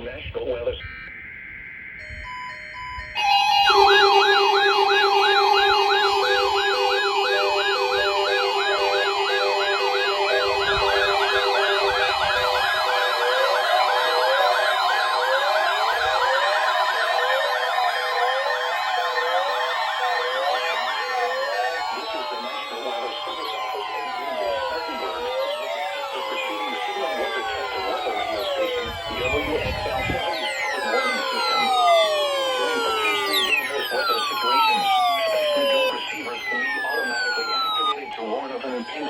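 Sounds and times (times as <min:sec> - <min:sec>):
quiet steady alarm tone: 0:00.6 - 0:39.0
high wavering tone: 0:00.8 - 0:38.0
fast up-and-down siren wails: 0:00.8 - 0:39.0
steady low tone: 0:02.0 - 0:13.3.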